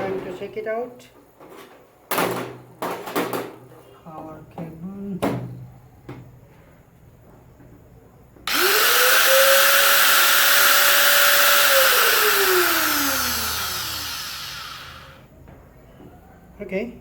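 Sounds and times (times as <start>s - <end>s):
angle grinder whining: 8.5s - 15.3s.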